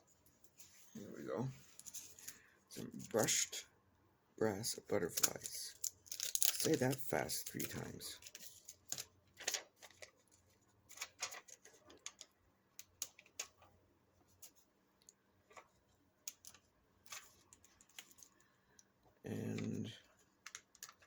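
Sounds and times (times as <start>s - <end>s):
craft pieces rustling: 5.1s - 10.0s.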